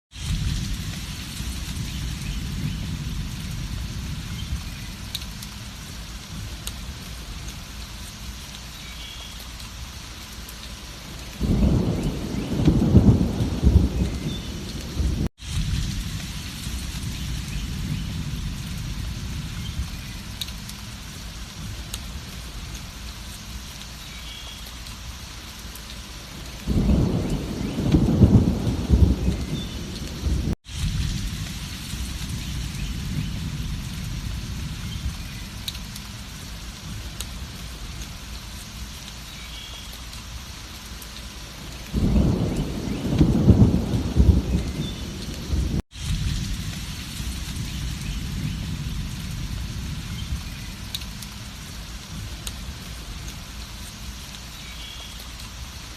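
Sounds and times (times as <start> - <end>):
rolling thunder: 0.1 - 5.4, 11.4 - 20.6, 26.6 - 38.0, 41.8 - 53.3
steady rain: 0.1 - 55.9.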